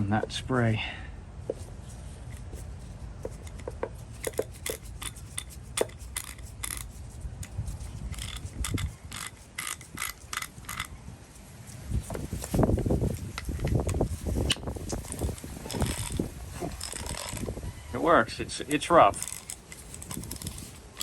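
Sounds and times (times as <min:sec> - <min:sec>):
socket ratchet clicking: 0:03.3 - 0:11.0, 0:13.3 - 0:17.5, 0:19.2 - 0:21.0.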